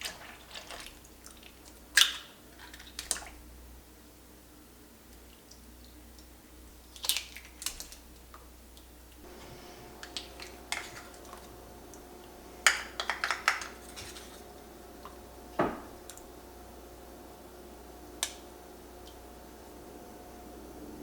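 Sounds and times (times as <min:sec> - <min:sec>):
faint steady hum: 0:03.0 - 0:21.0
knocks: 0:15.6 - 0:15.9.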